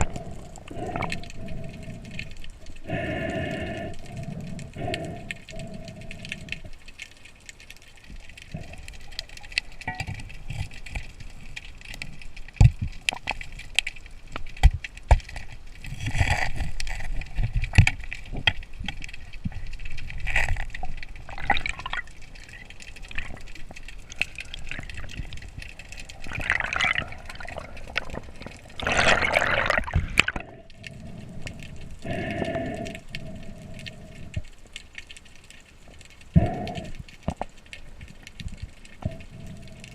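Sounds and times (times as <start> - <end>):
water sloshing and gurgling: 0.0 - 39.9
water rushing bursts: 24.0 - 30.7.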